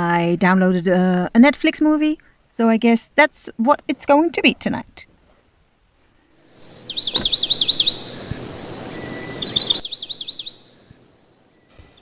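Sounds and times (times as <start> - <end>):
faint outdoor background noise: 0.0 - 12.0
songbird singing: 6.3 - 12.0.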